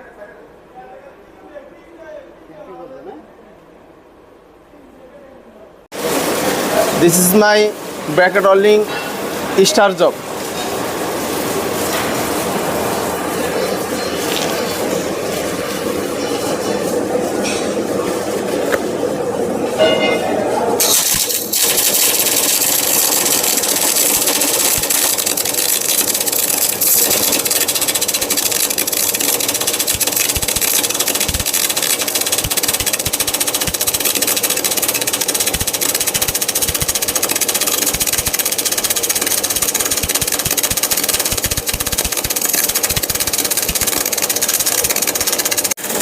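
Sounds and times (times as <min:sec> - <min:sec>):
welding arc crackling hiss: 0:20.8 - 0:45.8.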